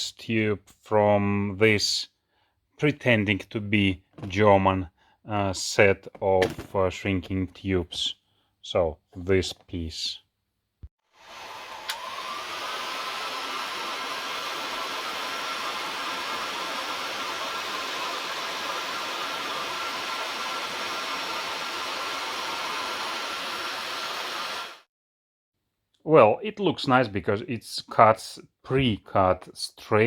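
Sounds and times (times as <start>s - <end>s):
heat gun fan whine: 11.2s - 24.8s.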